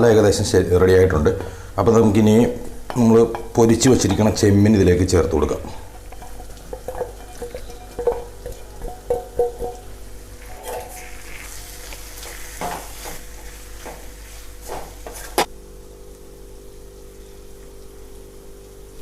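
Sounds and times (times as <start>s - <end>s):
prawns sizzling in a frying pan: 2.1s - 14.7s
spoon scraping and knocking a pan: 2.5s - 4.6s, 5.4s - 15.5s.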